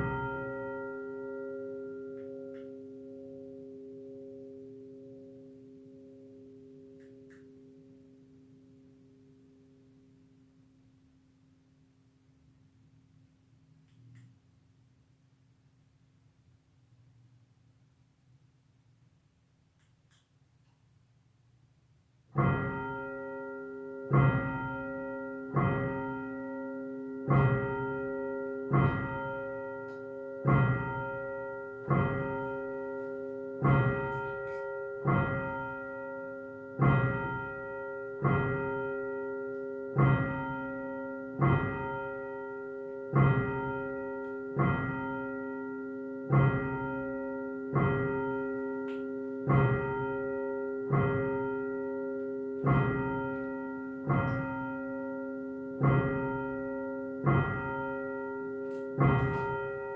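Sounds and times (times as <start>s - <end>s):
church bell ringing: 0.0s - 10.3s, 22.4s - 59.9s.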